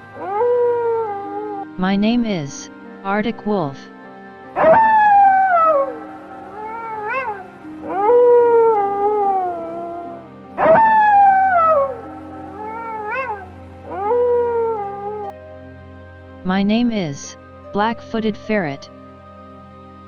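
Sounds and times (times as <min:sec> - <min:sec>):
wolf howling: 0:04.6 - 0:15.3.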